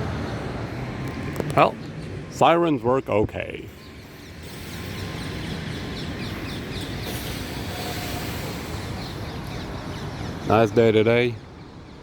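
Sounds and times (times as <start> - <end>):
low city rumble with hiss: 0.0 - 12.0.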